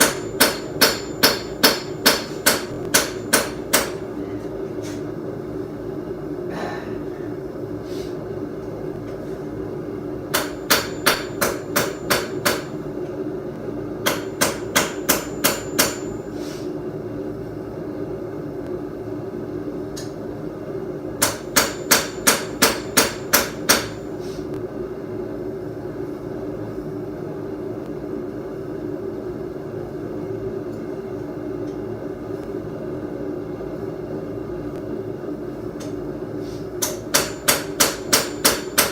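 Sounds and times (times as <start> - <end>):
hammer striking steel on anvil: 0.0 - 4.0, 10.3 - 12.8, 14.0 - 16.2, 21.2 - 24.1, 36.8 - 38.9
steady hum: 0.0 - 38.9.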